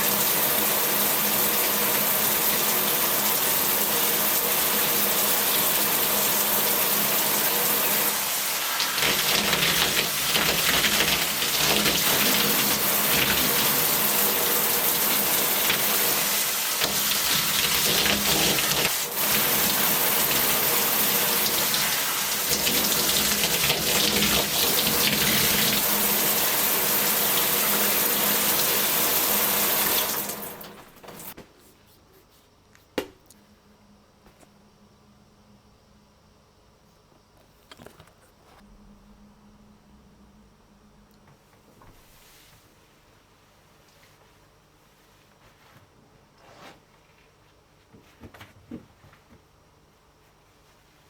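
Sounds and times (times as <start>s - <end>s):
running water: 0.0s - 31.4s.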